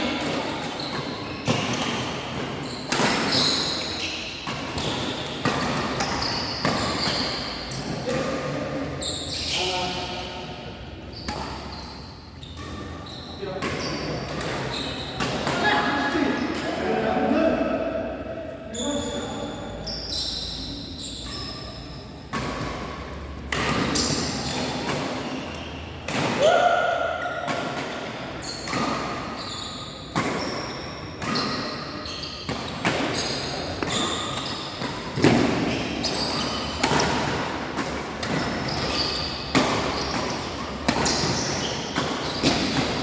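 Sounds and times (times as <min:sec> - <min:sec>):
rackets hitting shuttlecock: 0:31.2 - 0:43.0.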